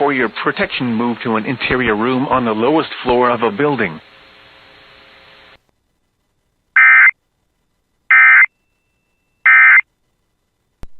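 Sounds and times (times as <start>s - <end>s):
digital tone bursts: 6.8s - 7.1s, 8.1s - 8.5s, 9.4s - 9.8s.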